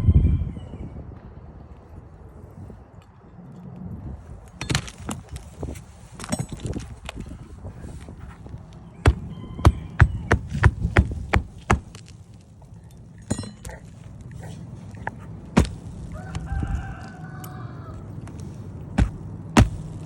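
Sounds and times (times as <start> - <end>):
rooster crowing: 8.8 - 10.6, 16.1 - 18.3
hand tool knocking on roof shingles: 9.0 - 12.2, 15.6 - 16.5, 19.0 - 20.0.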